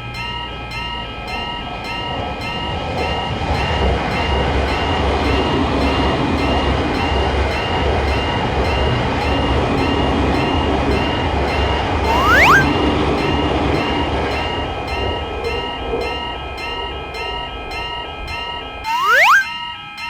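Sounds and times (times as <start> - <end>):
train wheels rumbling on rails: 0.0 - 12.1
level crossing warning bell: 0.0 - 20.0.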